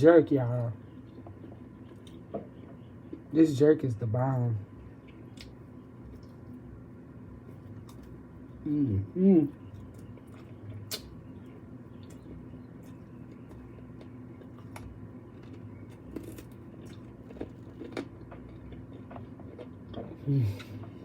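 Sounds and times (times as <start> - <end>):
person chewing: 1.0 - 3.3, 5.0 - 6.6, 7.4 - 8.8, 9.6 - 21.0
wet mouth clicks and smacks: 10.8 - 11.2.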